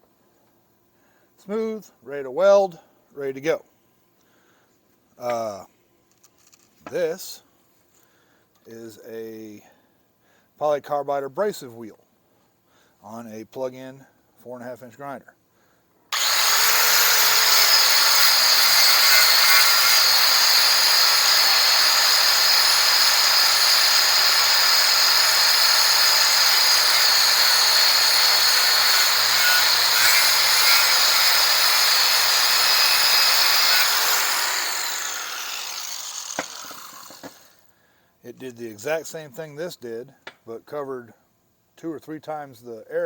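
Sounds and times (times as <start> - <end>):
angle grinder whining: 16.1 - 37.6
grinder winding down: 16.1 - 37.6.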